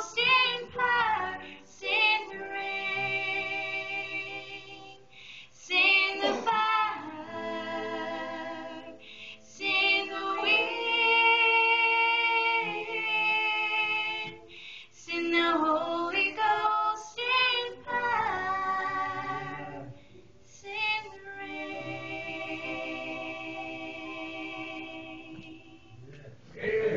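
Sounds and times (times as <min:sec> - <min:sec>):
sustained instrumental backing: 0:00.0 - 0:14.8, 0:17.3 - 0:26.1
woman singing slow song: 0:05.6 - 0:07.4, 0:09.5 - 0:19.4.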